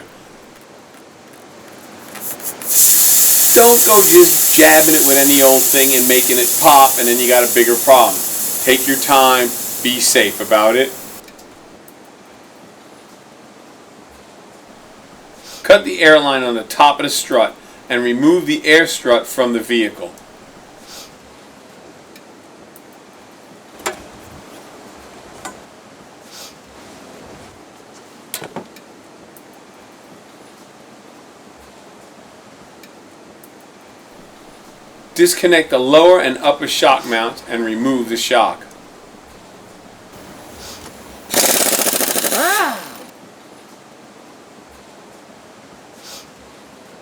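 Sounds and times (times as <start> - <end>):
steady hiss: 0.0 - 0.5, 1.8 - 11.8, 14.8 - 21.2, 34.2 - 43.1
impact wrench hammering: 2.2 - 11.2, 38.6 - 43.1.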